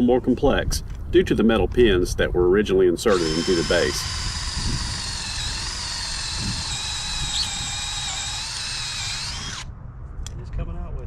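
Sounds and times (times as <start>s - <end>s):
electric drill drilling metal: 3.1s - 9.7s.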